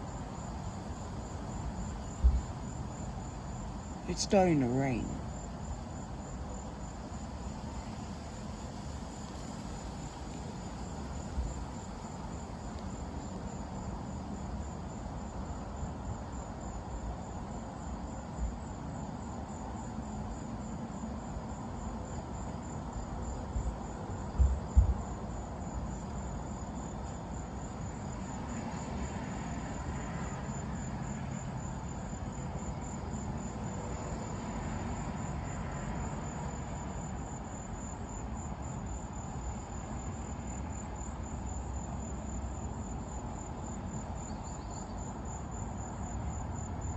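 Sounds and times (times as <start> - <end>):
night insects trilling: 0.0 - 46.9.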